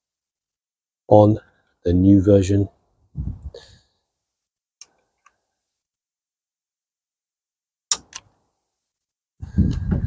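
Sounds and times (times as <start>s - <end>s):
sharp plastic clicks: 7.9s - 8.3s.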